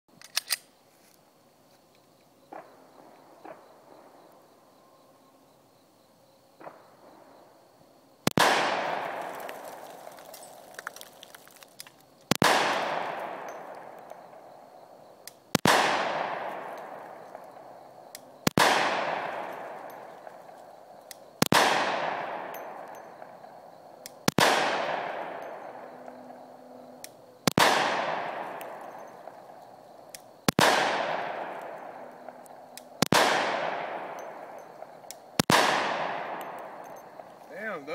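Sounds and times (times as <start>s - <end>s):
pistol shots: 8.3s - 10.5s, 12.3s - 14.5s, 15.3s - 20.4s, 21.4s - 23.4s, 24.1s - 25.9s, 27.4s - 37.2s.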